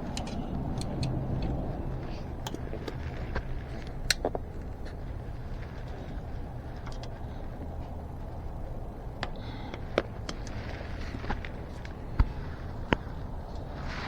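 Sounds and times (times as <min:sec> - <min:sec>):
metal bicycle spokes clicking: 0:00.0 - 0:07.8, 0:09.1 - 0:10.8
steady low hum: 0:00.0 - 0:14.0.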